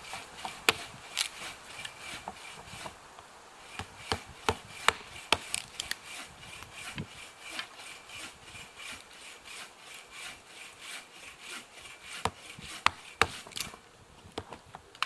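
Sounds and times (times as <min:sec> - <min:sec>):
saw cutting dry wood: 0:00.0 - 0:14.6
sharp wooden cracks and knocks: 0:00.4 - 0:02.4, 0:03.7 - 0:06.2, 0:12.1 - 0:15.0.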